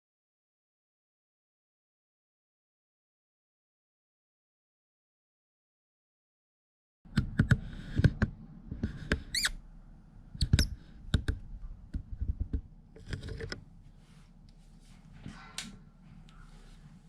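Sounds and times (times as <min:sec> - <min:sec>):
warbling squeak: 0:09.3 - 0:09.6.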